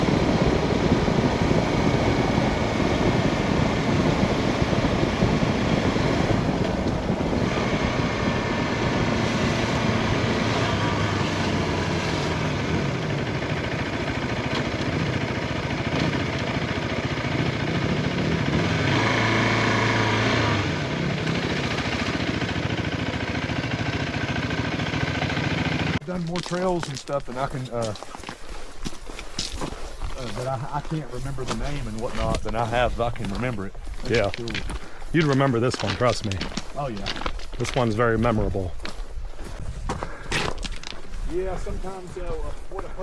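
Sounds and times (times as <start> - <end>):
car road and engine noise: 0.0 - 26.3.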